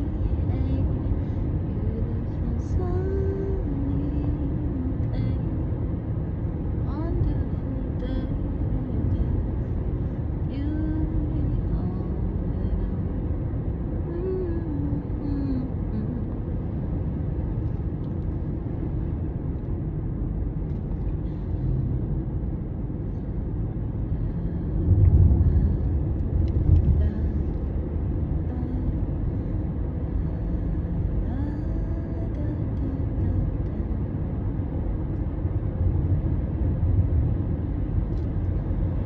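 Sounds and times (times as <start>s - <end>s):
low outdoor rumble: 0.0s - 39.0s.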